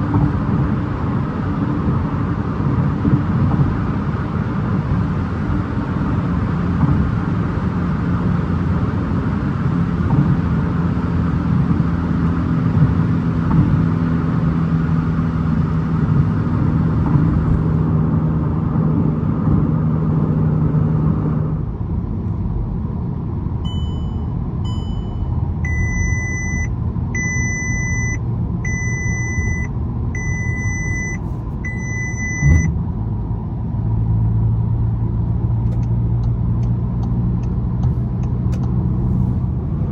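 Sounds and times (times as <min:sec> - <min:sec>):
car engine running: 0:00.0 - 0:39.9
road noise: 0:00.0 - 0:39.9
electronic chime beeps: 0:23.7 - 0:32.7
evenly spaced beeps: 0:23.7 - 0:32.7.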